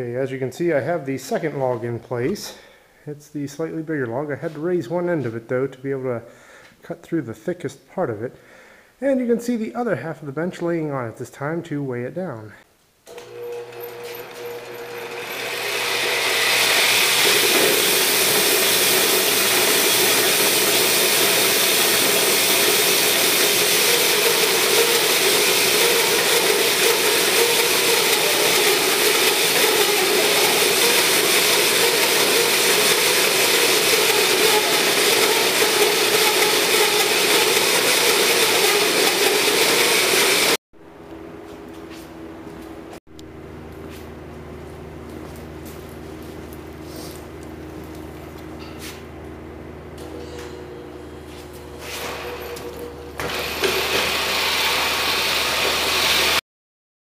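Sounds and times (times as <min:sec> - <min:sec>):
power saw cutting log: 0:13.1 - 0:40.6, 0:51.8 - 0:56.4.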